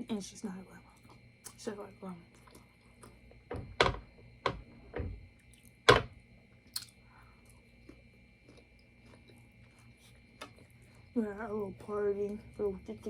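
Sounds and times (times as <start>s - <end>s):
chewing and wet mouth smacks: 6.6s - 11.0s.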